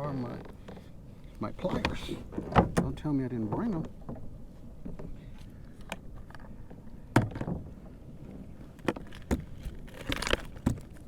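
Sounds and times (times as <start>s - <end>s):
gear knocking against kayak: 1.6s - 5.2s.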